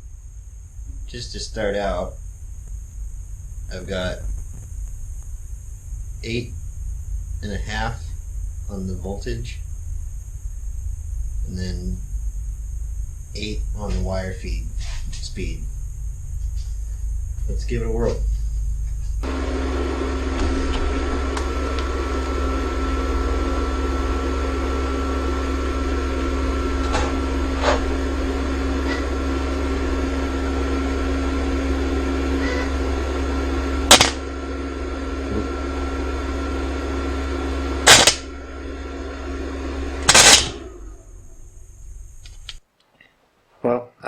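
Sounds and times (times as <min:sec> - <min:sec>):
welder humming: 0:00.0 - 0:42.6
sharp clicks: 0:33.9 - 0:34.2, 0:37.9 - 0:38.2, 0:40.1 - 0:40.6.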